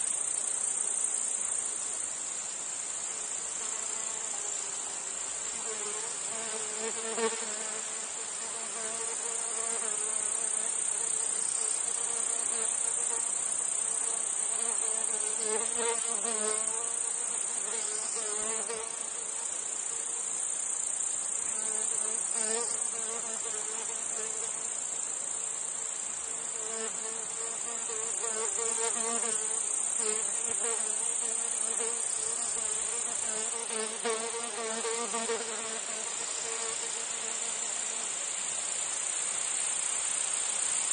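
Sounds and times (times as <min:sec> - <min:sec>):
flies buzzing: 0:05.4 - 0:20.2, 0:26.2 - 0:38.0.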